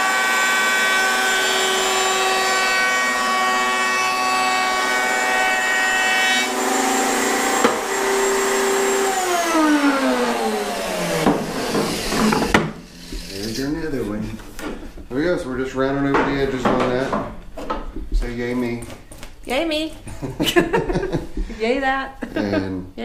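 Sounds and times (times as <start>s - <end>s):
electric router whining: 0.0s - 13.5s
knocks: 11.2s - 13.3s, 16.1s - 19.0s.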